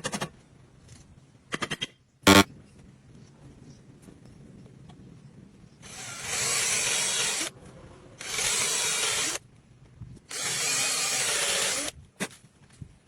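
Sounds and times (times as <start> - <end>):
power tool cutting wood: 10.3 - 11.9.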